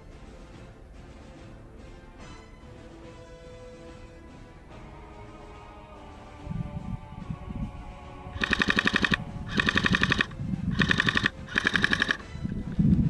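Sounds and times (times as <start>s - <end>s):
airsoft gun full-auto bursts: 8.4s - 12.3s.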